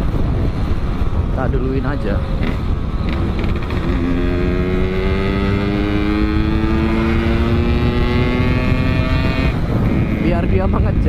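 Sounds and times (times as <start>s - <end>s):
motorcycle engine accelerating: 2.3s - 10.4s.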